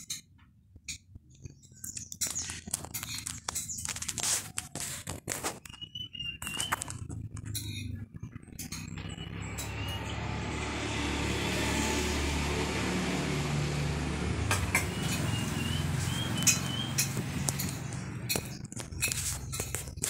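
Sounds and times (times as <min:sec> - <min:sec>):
vehicle engine running: 0:06.4 - 0:20.0.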